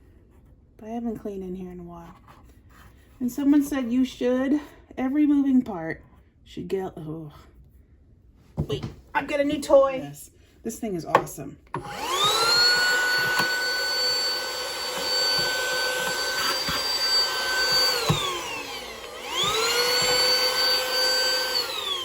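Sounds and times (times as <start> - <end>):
handheld electric cleaner whining: 11.7 - 22.0.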